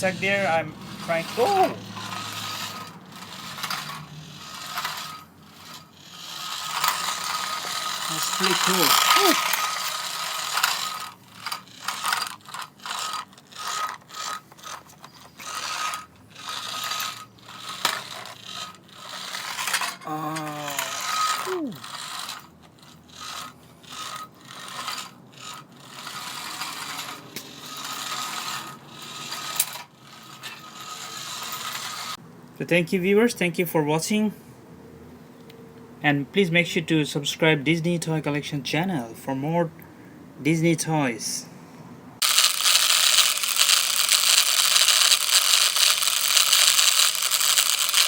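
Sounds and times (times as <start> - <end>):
toy truck motor whirring: 0.0 - 32.2, 42.2 - 48.0.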